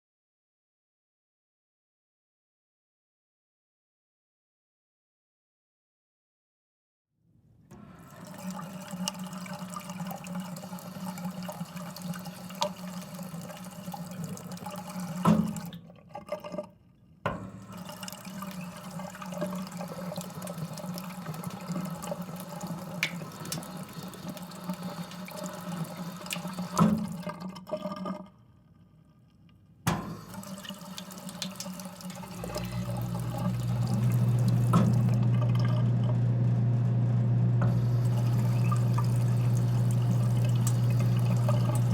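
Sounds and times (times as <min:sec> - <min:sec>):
drinking fountain water splashing: 0:08.1 - 0:16.7, 0:17.6 - 0:28.3, 0:30.0 - 0:36.2, 0:37.6 - 0:41.9
compressor humming: 0:29.9 - 0:41.9.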